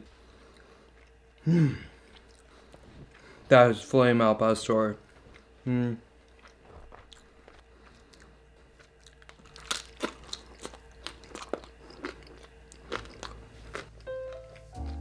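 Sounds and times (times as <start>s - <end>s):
crisp chewing crunches: 6.2s - 14.1s.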